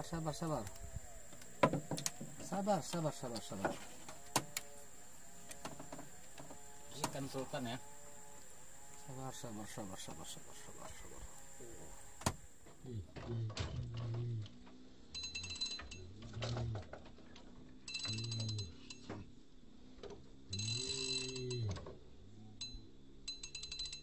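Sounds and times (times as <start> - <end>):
low murmured voices: 0.0 - 14.6.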